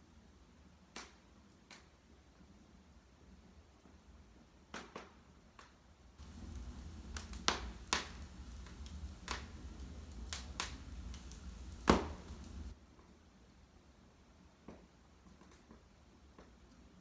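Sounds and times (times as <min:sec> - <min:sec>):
wood fire crackling: 0:06.2 - 0:12.8.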